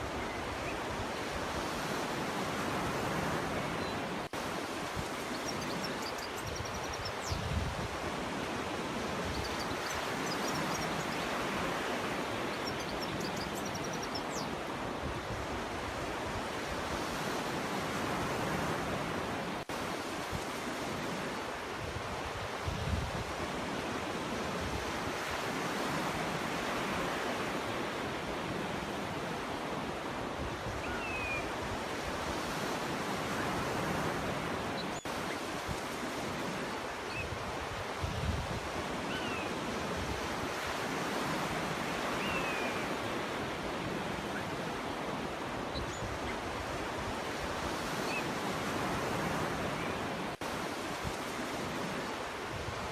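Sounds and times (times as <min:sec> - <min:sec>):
sea waves washing onto beach: 0:00.0 - 0:52.9
faint high bird chirps: 0:05.3 - 0:07.5, 0:09.3 - 0:11.4, 0:12.5 - 0:14.6, 0:30.8 - 0:31.5, 0:39.1 - 0:39.6, 0:42.1 - 0:43.0.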